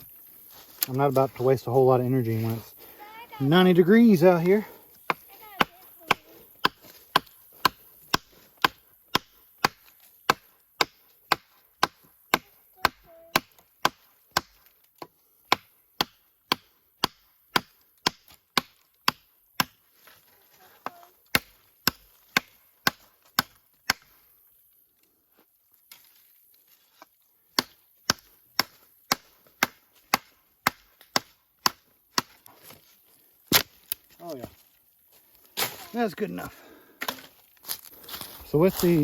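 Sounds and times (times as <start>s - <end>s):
knife chopping into wood: 5.1s - 19.8s, 20.8s - 24.2s, 27.6s - 32.8s, 33.5s - 34.0s.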